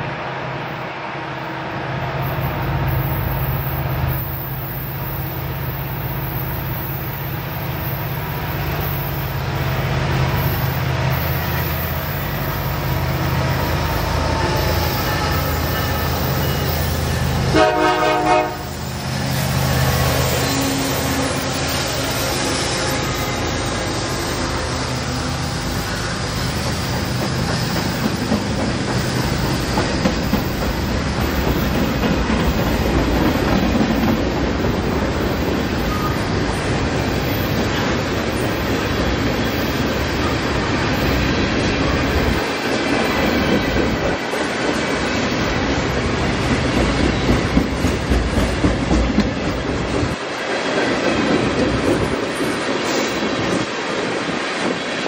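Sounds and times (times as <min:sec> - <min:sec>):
diesel locomotives rumbling: 0:00.0 - 0:55.0
locomotive horn blast: 0:17.4 - 0:18.8.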